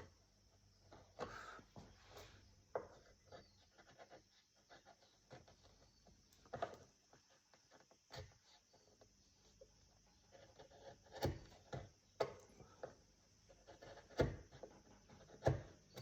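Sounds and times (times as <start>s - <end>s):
carving tool scraping wood: 0.0s - 16.0s.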